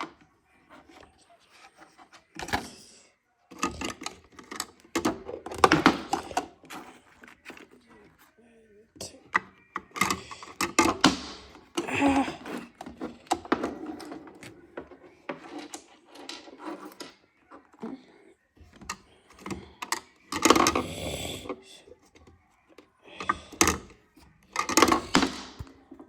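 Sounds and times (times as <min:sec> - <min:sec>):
rustling of things handled: 0:00.0 - 0:20.8
clicks and knocks of handling: 0:03.5 - 0:08.2, 0:22.0 - 0:26.0.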